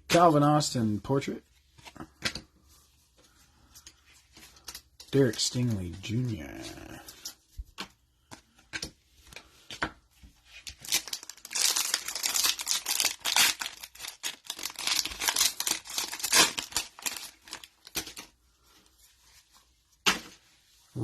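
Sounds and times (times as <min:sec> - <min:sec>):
foil wrapper ripping and crinkling: 0:10.8 - 0:18.3.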